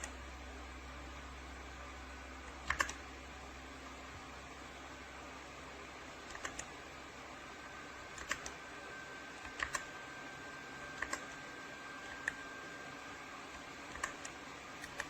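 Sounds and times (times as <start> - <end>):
mechanical keyboard keystrokes: 2.5 - 3.0, 6.2 - 6.7, 8.1 - 8.6, 9.4 - 10.0, 10.9 - 11.4, 12.0 - 12.5, 13.5 - 15.0.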